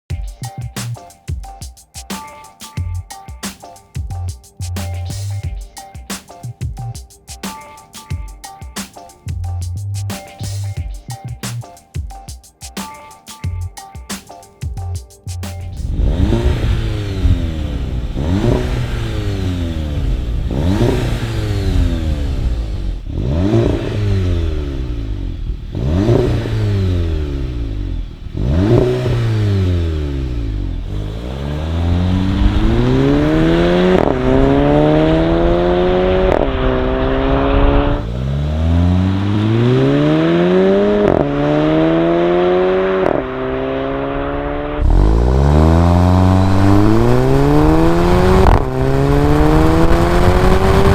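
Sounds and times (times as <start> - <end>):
car engine revving: 15.6 - 50.9
car accelerating through gears: 15.8 - 50.9.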